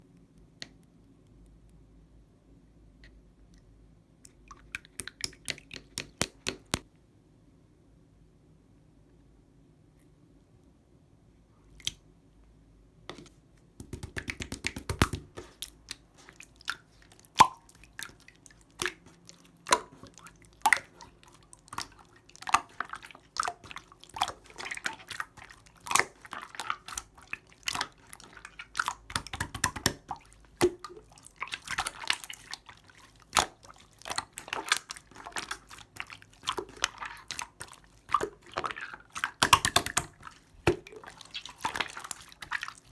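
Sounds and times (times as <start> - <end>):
slime squished by hand: 13.8 - 42.9.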